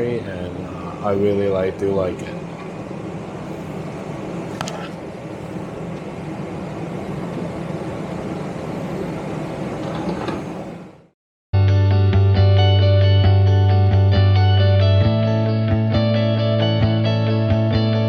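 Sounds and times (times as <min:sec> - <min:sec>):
airplane cabin engine rumble: 0:00.0 - 0:11.2
constant low hum: 0:00.0 - 0:11.2.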